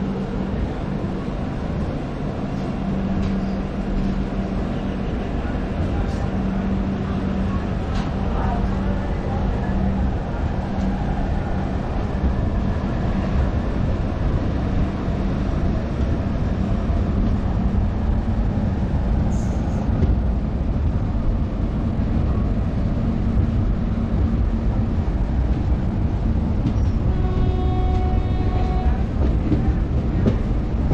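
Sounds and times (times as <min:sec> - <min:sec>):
train wheels rumbling: 0:00.0 - 0:30.9.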